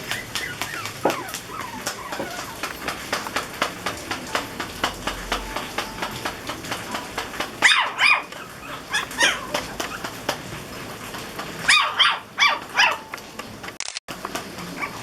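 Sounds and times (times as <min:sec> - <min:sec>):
puppies yipping: 0:00.0 - 0:04.9, 0:07.6 - 0:10.4, 0:11.6 - 0:13.2, 0:14.6 - 0:15.0.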